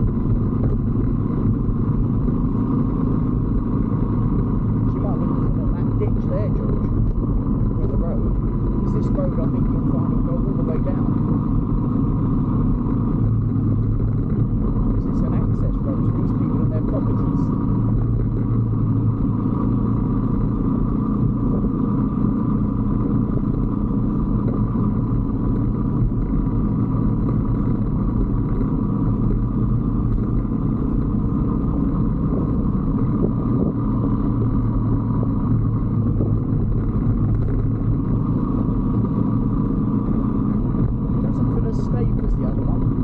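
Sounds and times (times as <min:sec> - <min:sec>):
motorcycle engine cruising: 0:00.0 - 0:43.0
road and wind noise: 0:00.0 - 0:43.0.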